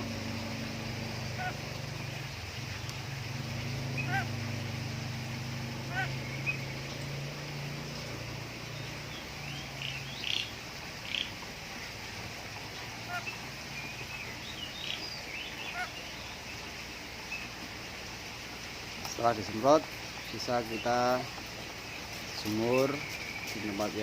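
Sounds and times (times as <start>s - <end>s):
birds chirping and squawking: 0.0s - 11.9s, 12.8s - 16.6s
low steady hum: 0.0s - 19.0s.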